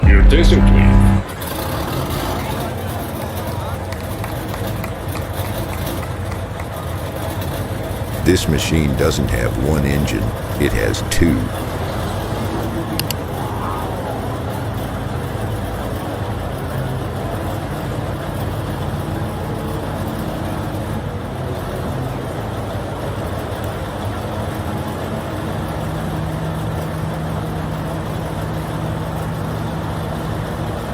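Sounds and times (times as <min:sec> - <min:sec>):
steady low hum: 0:00.0 - 0:01.3, 0:08.1 - 0:15.6
diesel engines droning: 0:00.0 - 0:30.9.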